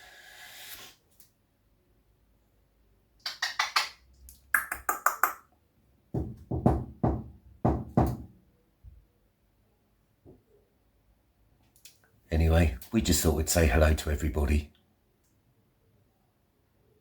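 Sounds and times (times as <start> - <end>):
light bright clicks: 11.6 - 12.1.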